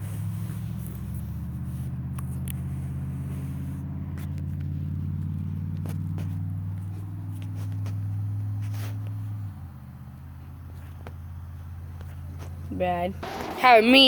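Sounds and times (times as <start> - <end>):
engine idling: 13.2 - 14.0.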